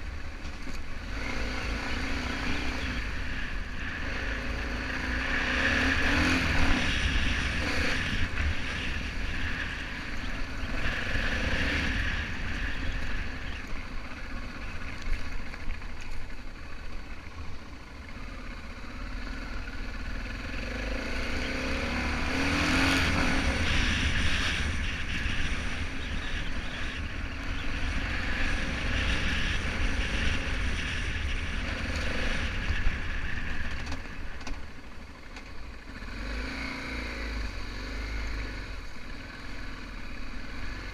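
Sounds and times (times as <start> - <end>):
motorcycle engine revving: 0.0 - 40.9
wind rumble on microphone: 21.8 - 34.7.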